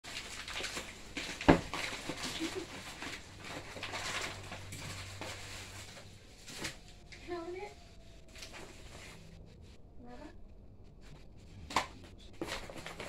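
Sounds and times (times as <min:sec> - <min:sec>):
plastic packaging crinkling: 0:00.0 - 0:07.1, 0:12.3 - 0:13.0.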